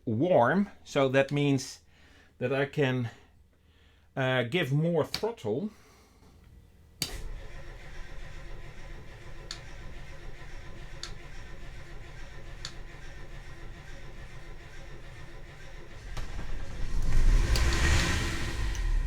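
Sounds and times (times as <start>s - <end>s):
boat diesel engine rumbling: 7.2s - 19.0s.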